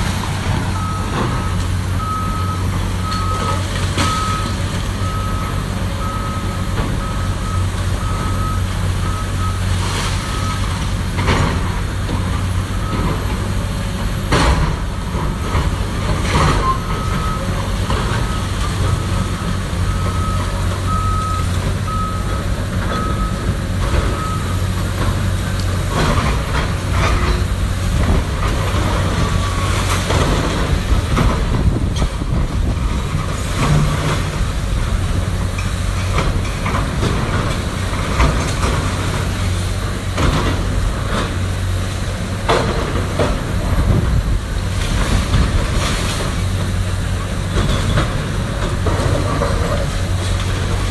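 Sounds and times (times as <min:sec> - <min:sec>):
heavy diesel engine running: 0:00.0 - 0:50.9
reversing alarm beeping: 0:00.7 - 0:10.9, 0:16.3 - 0:24.8.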